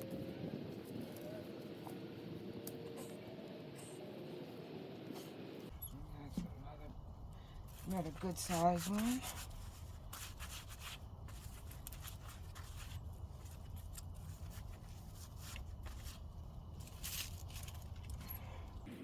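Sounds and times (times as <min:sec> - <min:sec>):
steady low rumble: 0:00.0 - 0:19.0
hands scraping and rustling soil: 0:07.6 - 0:18.3.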